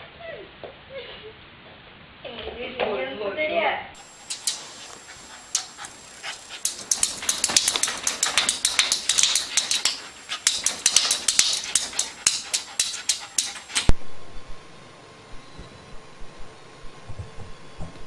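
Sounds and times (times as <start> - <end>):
rapid sharp taps: 4.0 - 13.9
faint hum: 4.0 - 18.0.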